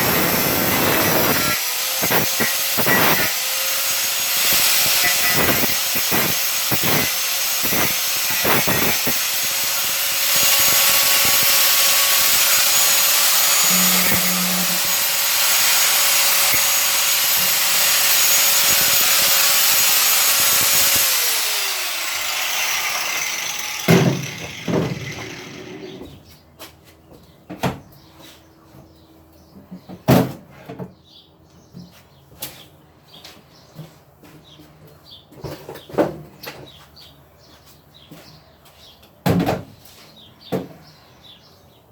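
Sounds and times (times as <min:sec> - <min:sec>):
angle grinder cutting metal: 0:00.0 - 0:26.0
angle grinder winding down: 0:00.0 - 0:26.0.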